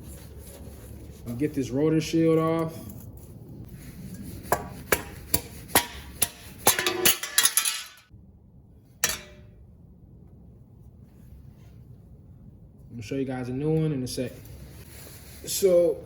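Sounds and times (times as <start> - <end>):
metal clanks and clinks: 5.8 - 8.1, 9.0 - 9.5
metal rattle: 5.8 - 8.1, 9.0 - 9.5.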